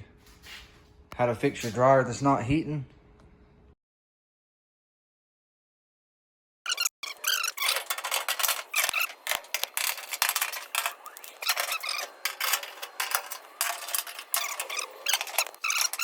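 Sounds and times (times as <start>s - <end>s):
screws and sheet metal squeaking: 6.7s - 16.0s.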